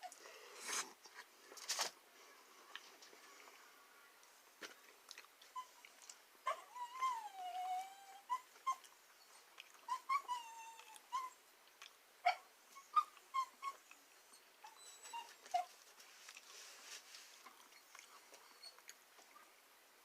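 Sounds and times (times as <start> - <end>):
dog whining: 5.6 - 11.4, 12.2 - 15.8, 17.6 - 18.9.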